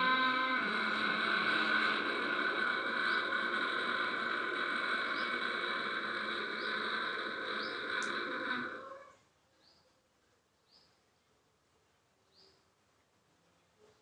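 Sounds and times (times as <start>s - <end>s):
snore-like breathing: 0.0s - 8.9s
faint bird chirps: 4.7s - 11.4s, 12.2s - 14.0s.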